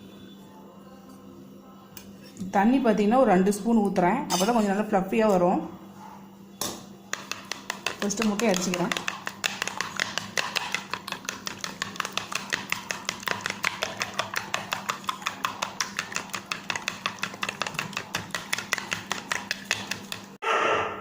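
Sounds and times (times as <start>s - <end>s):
utensil clicking against bowl: 7.1s - 20.4s.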